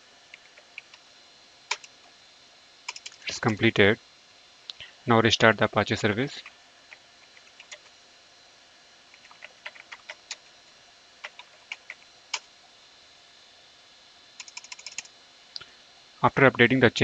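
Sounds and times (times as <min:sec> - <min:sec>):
keyboard typing: 0:01.7 - 0:01.9, 0:02.9 - 0:03.6, 0:06.9 - 0:07.9, 0:09.2 - 0:10.4, 0:11.2 - 0:12.5, 0:14.4 - 0:15.1.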